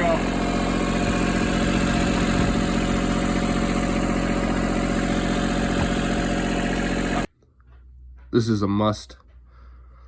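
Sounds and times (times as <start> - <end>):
tractor diesel engine running: 0.0 - 7.8.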